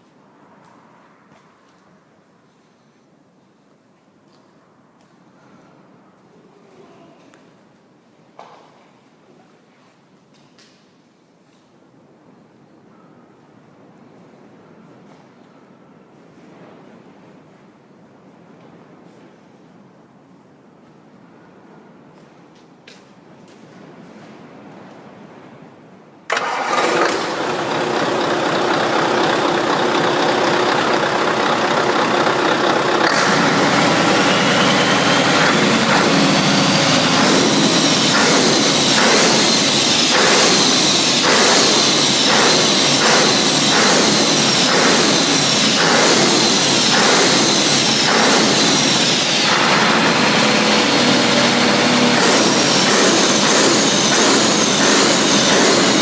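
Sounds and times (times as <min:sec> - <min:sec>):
diesel truck engine running: 0:26.3 - 0:56.0.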